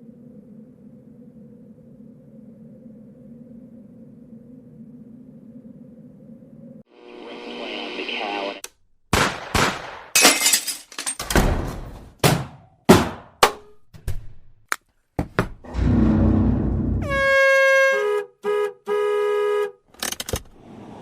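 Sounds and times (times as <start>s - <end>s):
low rumble: 0.0s - 6.9s, 15.7s - 17.2s
vehicle horn honking: 17.0s - 19.8s.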